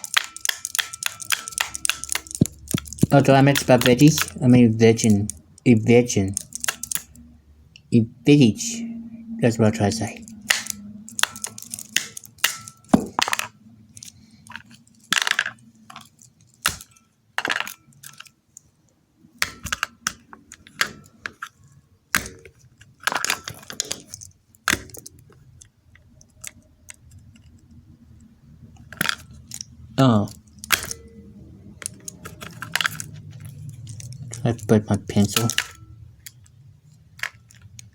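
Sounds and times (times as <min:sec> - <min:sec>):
small hard objects clicking: 0:00.0 - 0:07.2, 0:10.2 - 0:18.7, 0:28.9 - 0:37.9.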